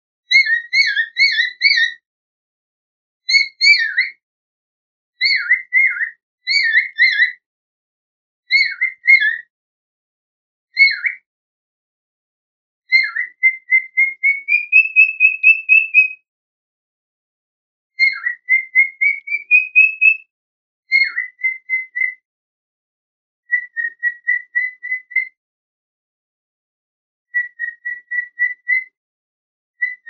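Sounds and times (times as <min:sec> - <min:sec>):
cockatiel whistling: 0:00.3 - 0:02.0, 0:03.3 - 0:04.2, 0:05.2 - 0:07.4, 0:08.6 - 0:09.4, 0:10.8 - 0:11.2, 0:12.9 - 0:16.2, 0:18.0 - 0:20.2, 0:20.9 - 0:22.2, 0:23.5 - 0:25.4, 0:27.3 - 0:28.9, 0:29.8 - 0:30.0.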